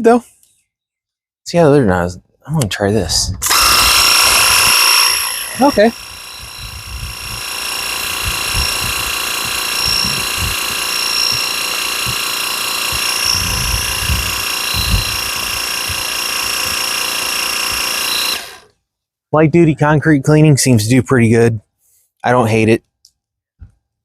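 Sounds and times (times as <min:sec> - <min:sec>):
pump whining: 0:03.4 - 0:18.7.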